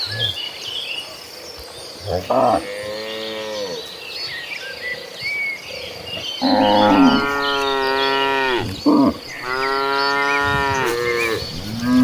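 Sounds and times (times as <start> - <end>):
cattle mooing: 6.4 - 12.0.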